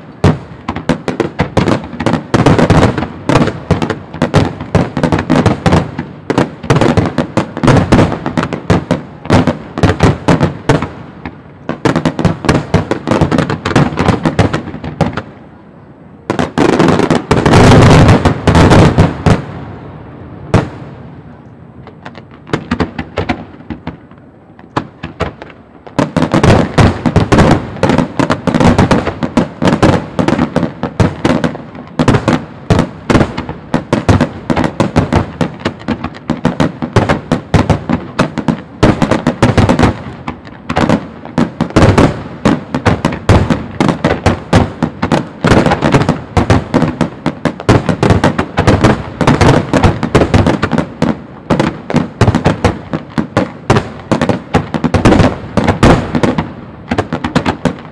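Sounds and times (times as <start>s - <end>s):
fireworks bursting: 0.0s - 15.6s, 16.2s - 57.9s.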